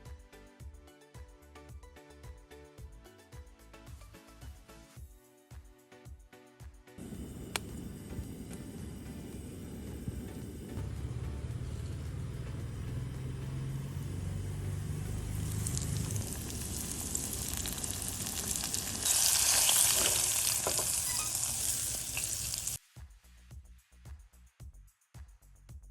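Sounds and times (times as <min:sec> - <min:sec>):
fish sizzling in oil: 0:07.0 - 0:10.8, 0:14.9 - 0:22.8.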